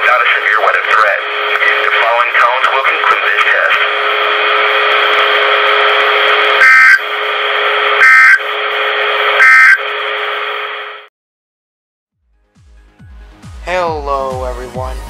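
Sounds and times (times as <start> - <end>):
radio reception static: 0.0 - 11.1
shrill warbling data bursts: 5.9 - 7.1, 7.9 - 8.5, 9.4 - 9.8.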